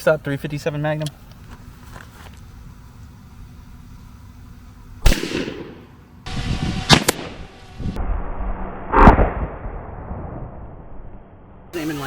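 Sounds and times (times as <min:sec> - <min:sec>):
gunshots with short echo: 0:05.0 - 0:06.0.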